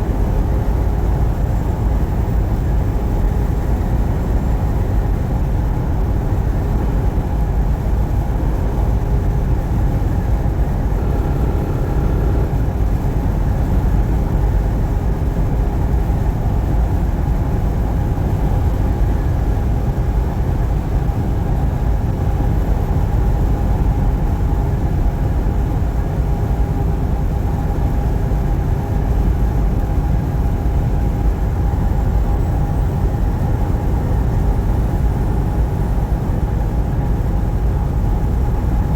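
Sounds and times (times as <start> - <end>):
faint steady hum: 0.0 - 24.3
truck engine and tyre rumble: 0.0 - 38.9.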